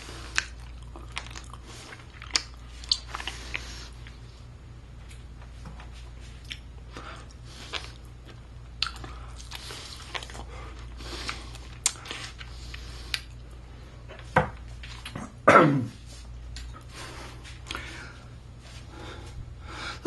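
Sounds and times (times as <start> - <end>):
person chewing and biting: 0.0 - 4.2, 6.3 - 15.2.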